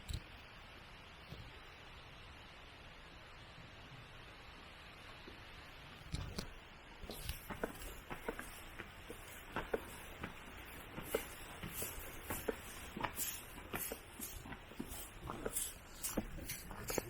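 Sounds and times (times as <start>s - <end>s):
footsteps walking: 7.0s - 17.0s.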